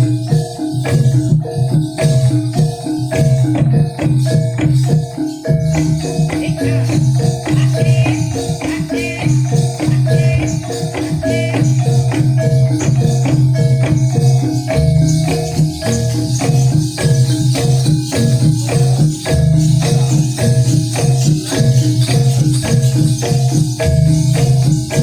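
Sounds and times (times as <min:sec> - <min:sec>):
metal mallet instruments: 0:00.0 - 0:25.0
rattling shaken percussion: 0:00.0 - 0:25.0.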